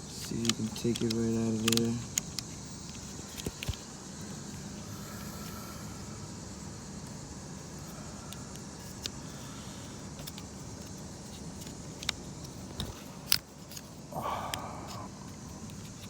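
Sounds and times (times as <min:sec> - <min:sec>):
plastic clicks and taps: 0:00.2 - 0:03.8
low hum: 0:04.1 - 0:09.7.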